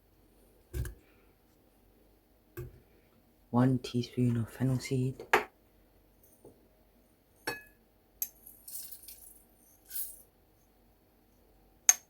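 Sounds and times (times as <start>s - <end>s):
seeds rattling into pot: 8.3s - 10.3s.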